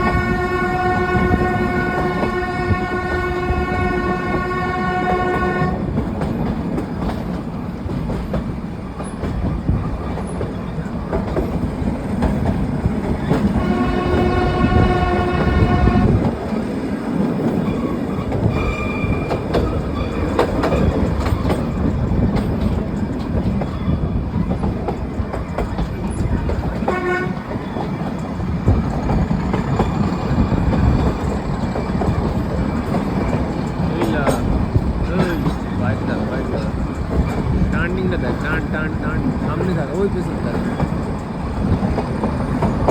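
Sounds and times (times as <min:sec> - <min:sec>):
train horn: 0:00.0 - 0:06.0, 0:13.4 - 0:16.4, 0:26.5 - 0:27.6
train wheels clattering on track: 0:00.0 - 0:42.9.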